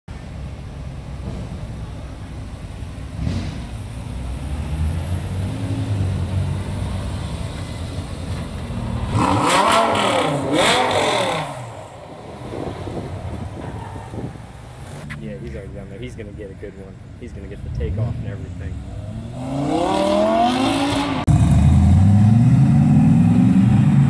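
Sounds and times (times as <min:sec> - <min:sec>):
car engine rumbling: 0:00.1 - 0:24.0
engine revving hard: 0:09.1 - 0:11.8, 0:19.2 - 0:24.0.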